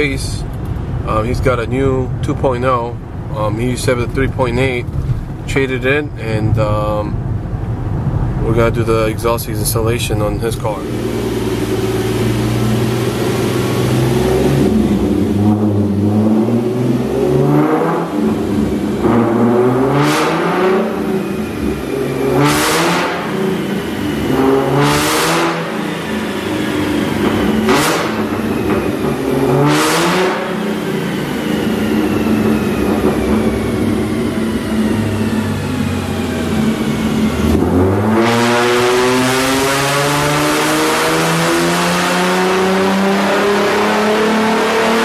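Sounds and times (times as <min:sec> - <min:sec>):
car engine accelerating: 0:00.0 - 0:45.0
loud rushing whooshes: 0:06.6 - 0:09.2, 0:10.8 - 0:45.0.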